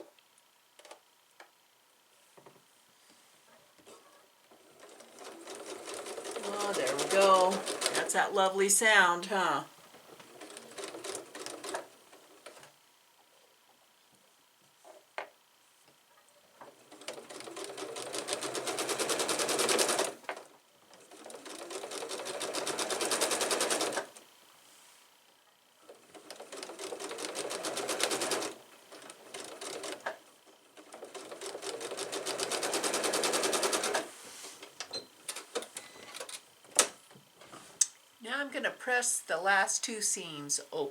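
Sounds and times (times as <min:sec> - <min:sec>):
sewing machine stitching: 0:04.5 - 0:08.2, 0:09.9 - 0:12.7, 0:16.6 - 0:24.2, 0:25.9 - 0:30.2, 0:30.8 - 0:34.1.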